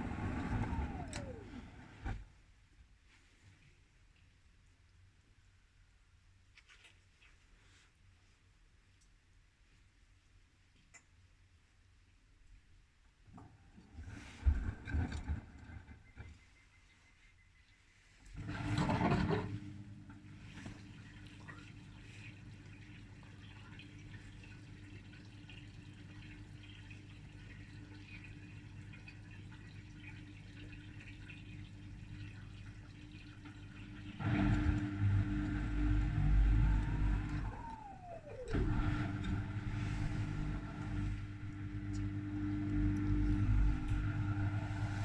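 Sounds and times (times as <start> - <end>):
washing machine drum tumbling: 0.0 - 2.1, 30.0 - 45.0
washing machine motor hum: 0.0 - 2.4, 13.5 - 16.2, 18.3 - 45.0.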